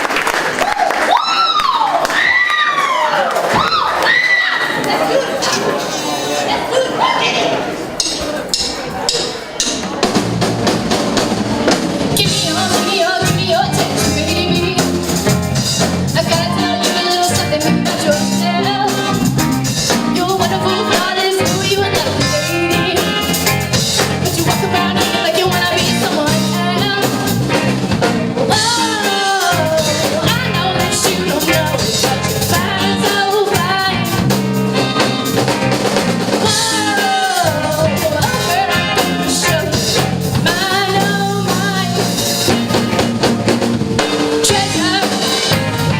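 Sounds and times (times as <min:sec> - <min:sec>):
live rock band: 0:07.8 - 0:45.9
drum kit beat: 0:07.9 - 0:45.9
person singing: 0:12.2 - 0:15.2, 0:16.1 - 0:35.4, 0:36.4 - 0:42.8, 0:44.0 - 0:45.9.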